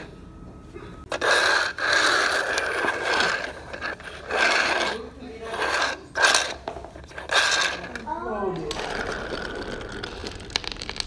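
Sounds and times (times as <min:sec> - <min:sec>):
toy car wheels whirring: 0:01.1 - 0:11.0.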